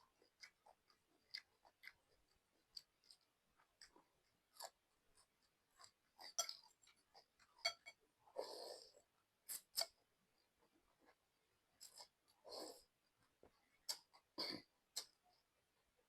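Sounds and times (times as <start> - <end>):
chewing noodles with mouth smacks: 0.0 - 10.0, 11.8 - 14.3.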